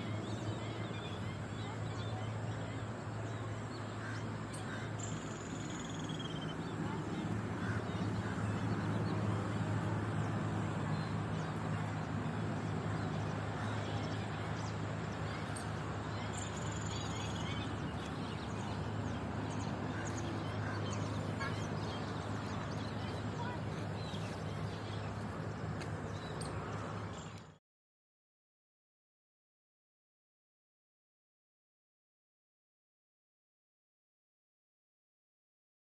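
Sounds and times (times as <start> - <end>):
low drone of road traffic: 0.0 - 27.6.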